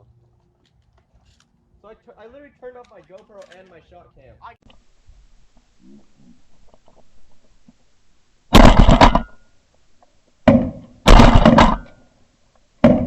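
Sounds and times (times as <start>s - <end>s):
shotgun shots: 8.5s - 9.4s, 10.5s - 12.0s.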